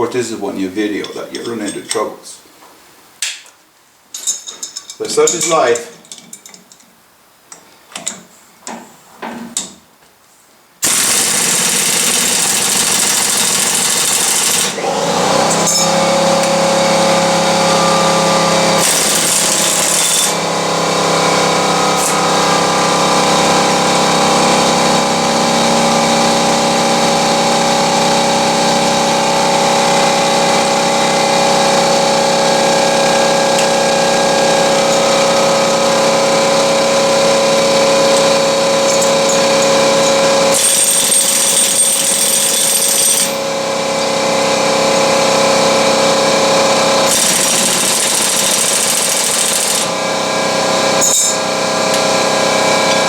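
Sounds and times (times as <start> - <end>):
loud power tool running: 10.8 - 53.0.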